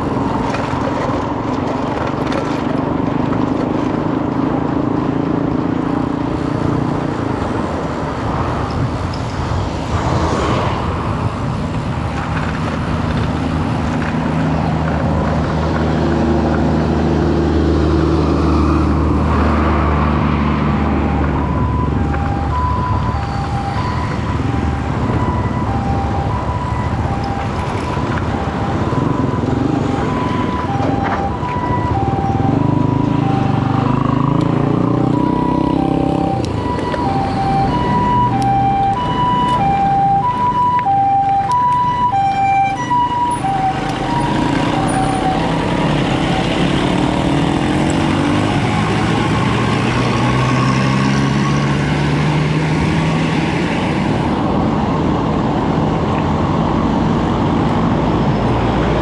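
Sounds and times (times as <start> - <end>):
two-tone alarm: 21.0 - 27.6, 34.9 - 46.5
heavy vehicle engine running: 42.9 - 59.0.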